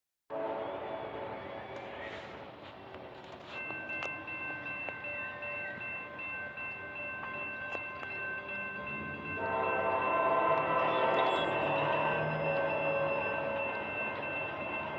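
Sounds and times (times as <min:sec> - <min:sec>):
locomotive air horn blast: 0:00.3 - 0:01.4, 0:09.4 - 0:14.2.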